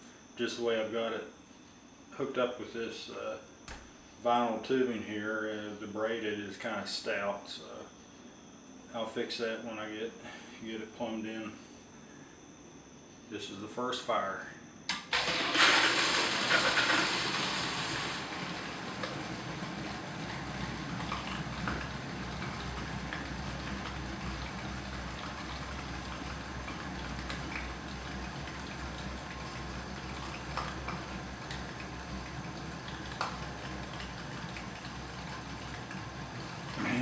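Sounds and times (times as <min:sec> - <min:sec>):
pump humming: 0:14.9 - 0:37.0
aquarium pump gushing water and air: 0:15.0 - 0:37.0.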